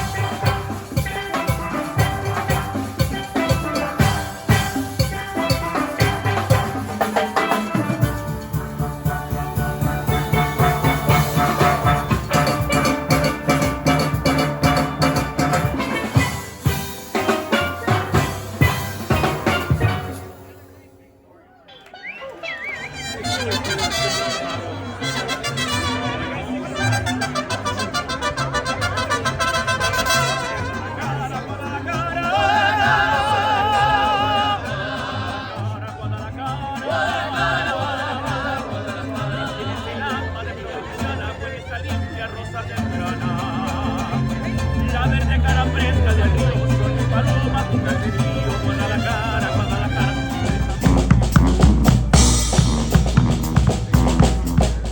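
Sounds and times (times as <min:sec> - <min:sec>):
steady drum beat: 0:00.0 - 0:20.5, 0:49.5 - 0:54.9
pitched instruments playing: 0:00.0 - 0:54.9
street band melody with vibrato: 0:00.0 - 0:54.9
repeating bass line: 0:49.1 - 0:54.9.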